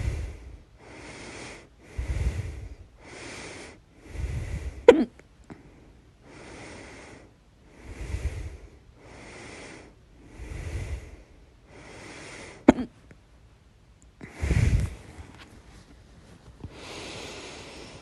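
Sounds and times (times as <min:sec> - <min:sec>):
person breathing: 0:00.0 - 0:04.9, 0:05.5 - 0:12.7, 0:14.2 - 0:15.4, 0:16.6 - 0:18.0
person hiccuping: 0:04.9 - 0:05.2, 0:12.7 - 0:13.0.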